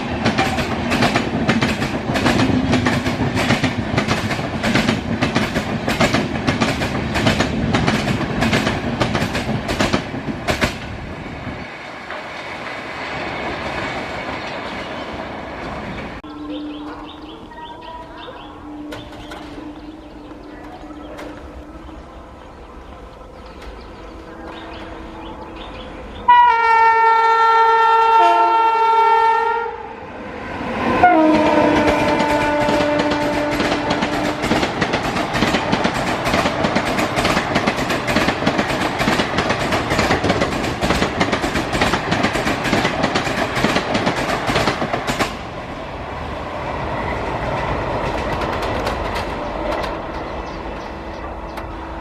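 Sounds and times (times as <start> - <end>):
train wheels clattering over rail joints: 0.0 - 15.0, 31.7 - 45.5, 47.5 - 51.8
locomotive horn blasts: 18.5 - 22.0, 26.3 - 29.9, 31.0 - 34.6.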